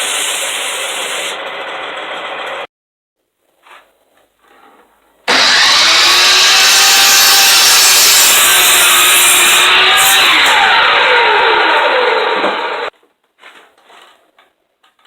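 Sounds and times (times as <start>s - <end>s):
power tool cutting wood: 0.0s - 2.7s, 5.3s - 12.9s.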